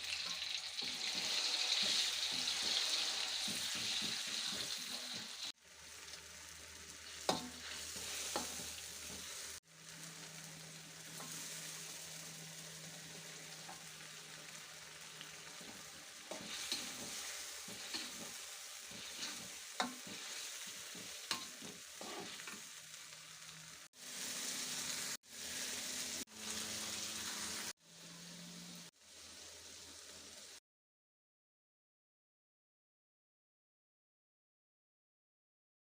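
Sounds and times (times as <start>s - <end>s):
food sizzling in oil: 0.0s - 30.6s
spatula tapping pan: 16.3s - 22.6s.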